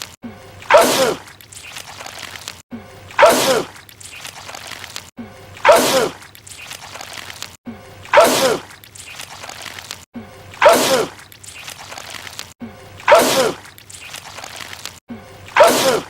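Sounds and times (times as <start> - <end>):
man sneezing loudly: 13.1 - 13.6, 15.6 - 16.0.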